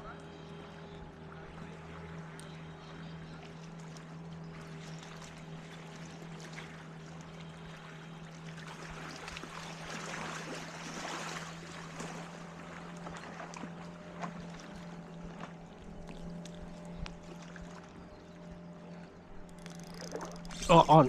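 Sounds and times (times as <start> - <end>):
steady low hum: 0.0 - 21.0
water lapping against kayak hull: 0.0 - 21.0
small clicks: 19.4 - 20.6.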